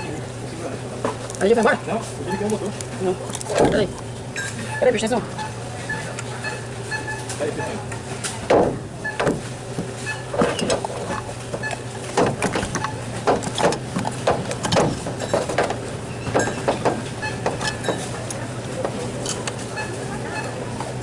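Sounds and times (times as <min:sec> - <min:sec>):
steady low hum: 0:00.0 - 0:21.0
irregular knocks and clatters: 0:08.5 - 0:18.1.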